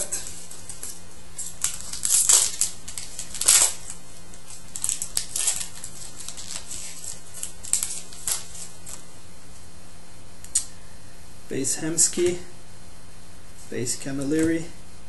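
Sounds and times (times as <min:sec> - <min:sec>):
card pack wrapper tearing and crinkling: 0:00.0 - 0:09.0.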